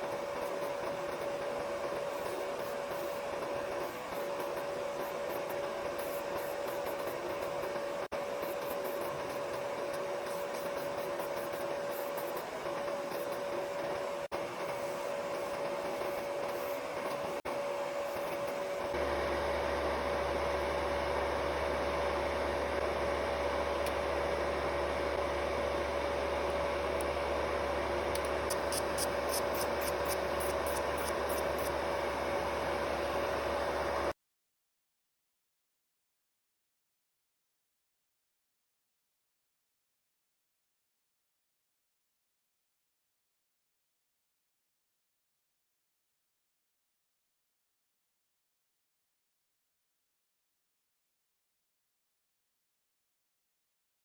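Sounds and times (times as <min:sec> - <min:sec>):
small electric motor whining: 0:00.0 - 0:20.6, 0:22.2 - 0:33.8.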